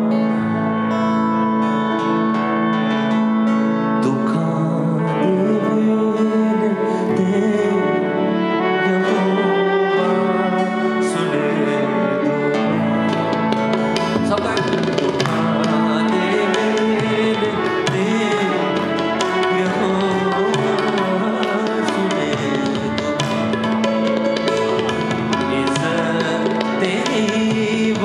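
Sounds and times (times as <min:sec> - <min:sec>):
keyboard chords: 0:00.0 - 0:28.0
hand drums beat: 0:13.0 - 0:28.0.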